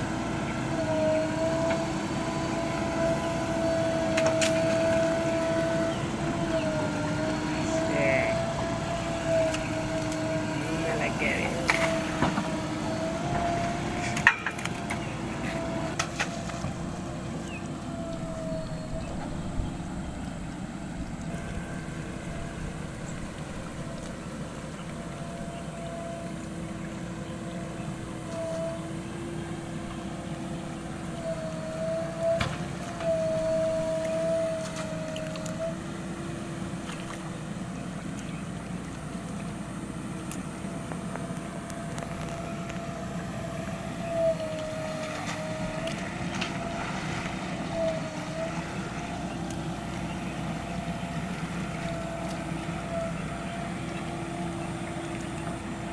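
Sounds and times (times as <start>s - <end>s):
diesel engine running: 0.0s - 55.9s.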